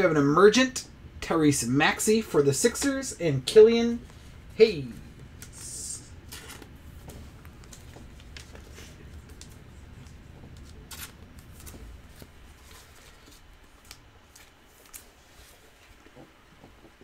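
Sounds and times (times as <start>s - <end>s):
trading cards rustling and sliding: 4.0s - 16.1s
soft clicks of cards: 6.3s - 15.1s.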